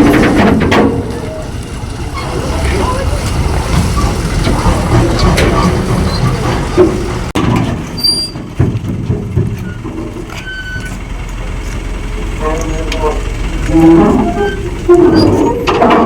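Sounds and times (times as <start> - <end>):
metallic knocks and clanks: 0.0 - 1.4, 3.6 - 11.1, 12.5 - 16.0
heavy vehicle engine running: 0.0 - 16.0.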